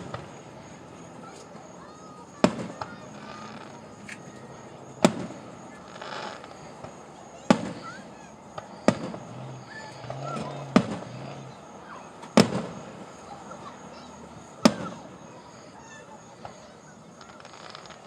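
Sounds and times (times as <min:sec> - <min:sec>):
small firework pop: 0:00.0 - 0:00.4, 0:02.4 - 0:04.4, 0:05.0 - 0:09.2, 0:12.2 - 0:12.8, 0:14.6 - 0:15.0
fireworks booming: 0:00.0 - 0:18.0.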